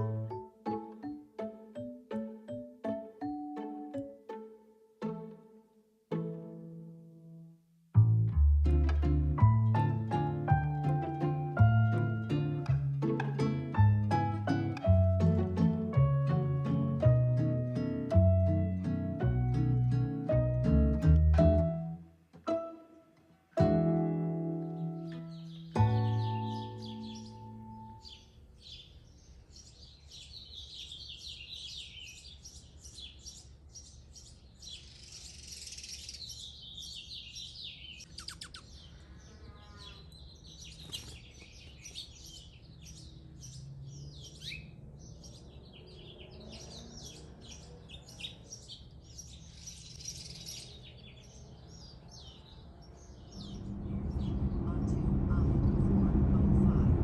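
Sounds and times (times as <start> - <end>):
bird trill: 24.5 - 54.4
birds chirping and singing: 24.5 - 56.8.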